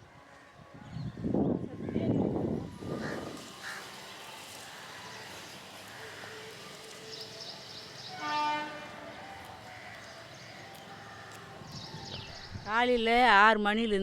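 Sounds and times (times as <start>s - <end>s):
short steady horn: 8.2s - 9.0s.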